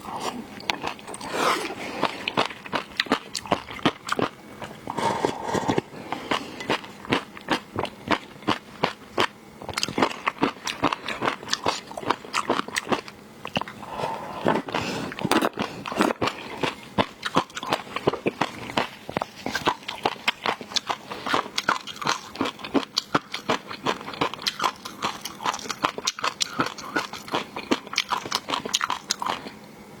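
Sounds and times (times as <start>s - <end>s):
crunching and wet chewing: 0.0s - 29.6s.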